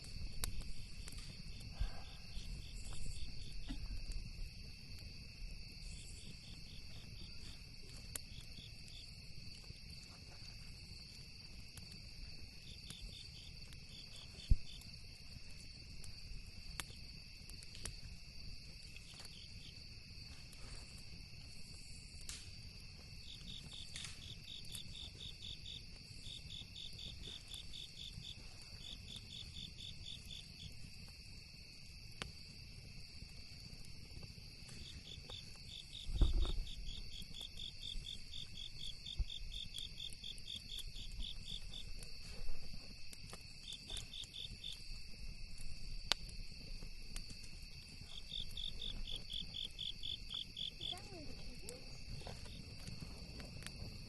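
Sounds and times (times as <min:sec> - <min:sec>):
campfire crackling: 0:00.0 - 0:54.0
crickets trilling: 0:00.0 - 0:54.0
insects chirping: 0:00.0 - 0:54.0
thump: 0:36.1 - 0:36.7.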